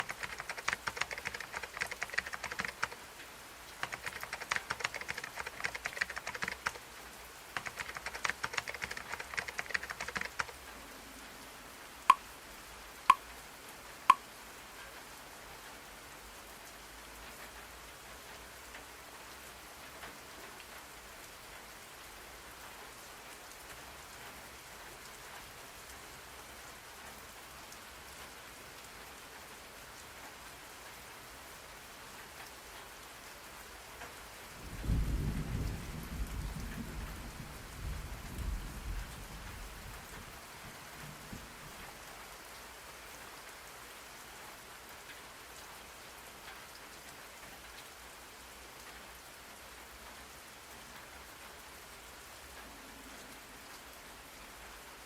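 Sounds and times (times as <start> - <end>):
keyboard typing: 0.0 - 3.0, 3.8 - 6.8, 7.6 - 10.6
steady rain: 0.0 - 55.0.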